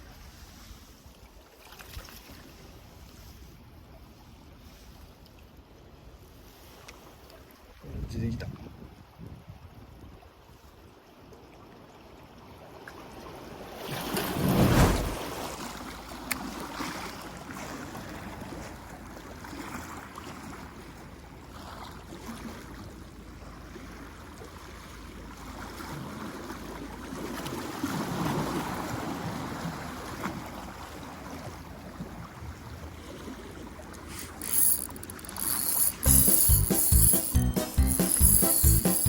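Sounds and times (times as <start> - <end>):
music: 36.0 - 39.0.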